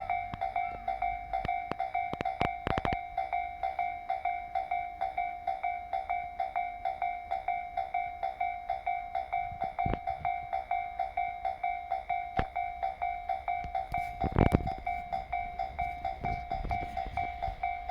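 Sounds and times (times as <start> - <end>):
level crossing alarm dinging: 0.0 - 17.9.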